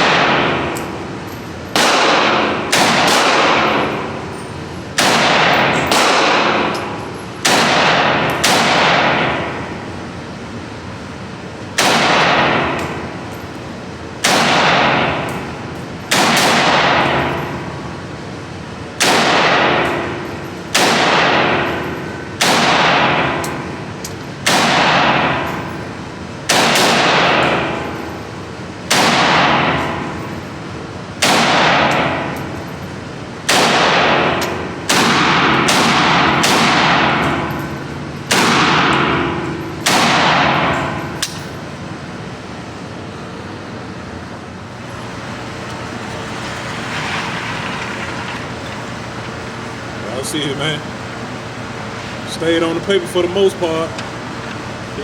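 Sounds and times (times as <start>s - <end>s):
gunshots with ringing tail: 1.8s - 4.2s, 5.0s - 6.7s, 7.4s - 9.6s, 11.8s - 12.8s, 14.2s - 15.2s, 16.1s - 17.4s, 19.0s - 20.1s, 20.7s - 21.7s, 22.4s - 23.4s, 24.4s - 25.6s, 26.5s - 27.9s, 28.9s - 30.2s, 31.2s - 32.4s, 33.5s - 37.7s, 38.3s - 41.2s.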